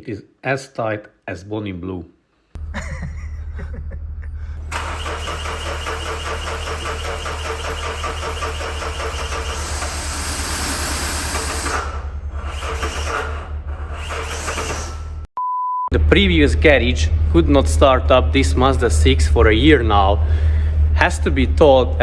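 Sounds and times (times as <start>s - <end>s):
diesel engine cranking and starting: 4.4s - 15.3s, 16.0s - 22.0s.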